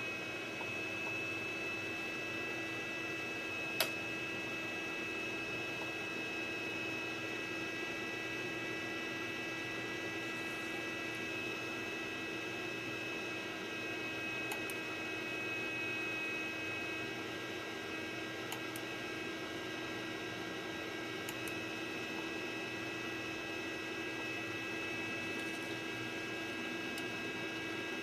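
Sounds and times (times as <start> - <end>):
electrical hum: 0.0 - 28.0
computer fan rushing: 25.2 - 27.9.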